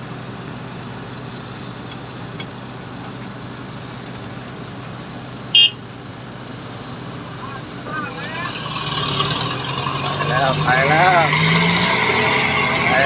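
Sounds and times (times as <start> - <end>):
heavy diesel machinery running: 0.0 - 13.0
high-pitched beep: 5.6 - 5.8.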